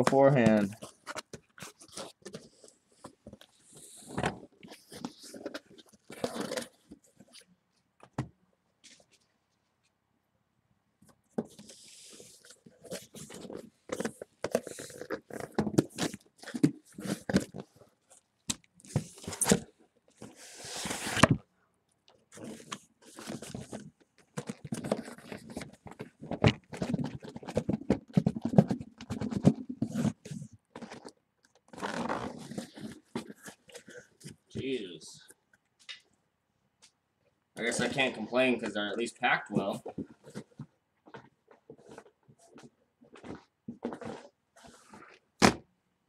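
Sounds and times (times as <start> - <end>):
cardboard scraping and crunching: 20.3 - 21.4, 31.7 - 34.1, 43.1 - 45.2.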